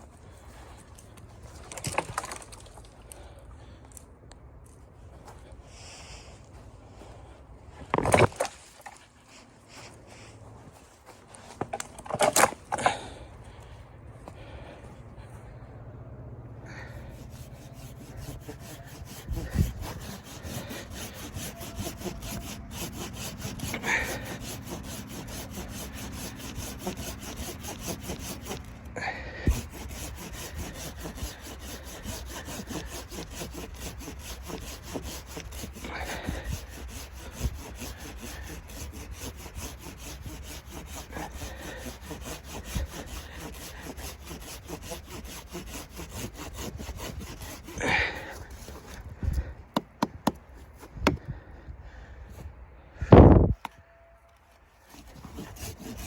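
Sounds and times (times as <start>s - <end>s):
hand saw cutting wood: 10.9s - 13.1s, 16.7s - 51.3s, 54.7s - 56.0s.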